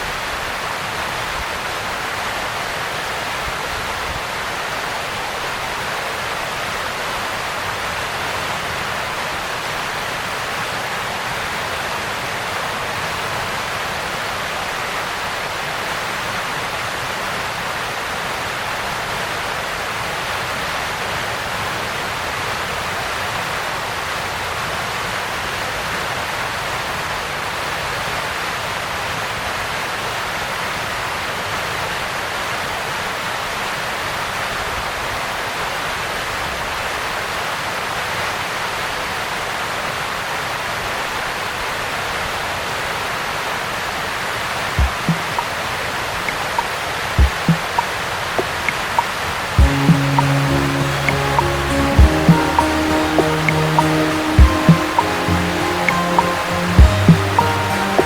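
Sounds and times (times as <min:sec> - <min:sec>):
waterfall rushing: 0:44.6 - 0:58.0.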